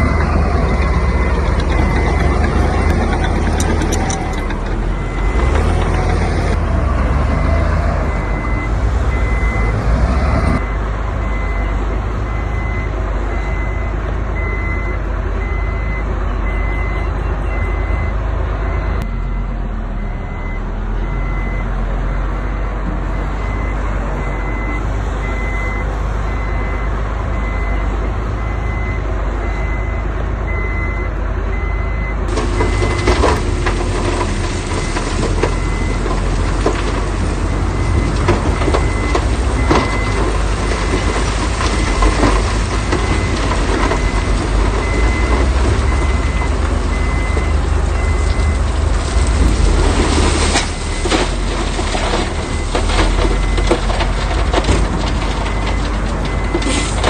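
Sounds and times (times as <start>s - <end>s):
rattles and knocks: 0.0s - 6.5s
reversing alarm beeping: 0.0s - 6.6s, 7.4s - 54.0s
diesel machinery engine rumble: 0.0s - 57.0s.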